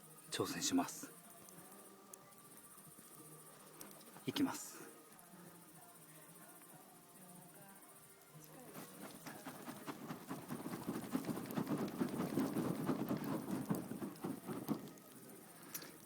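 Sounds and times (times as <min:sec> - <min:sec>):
paper fan flapping: 0:08.6 - 0:16.0.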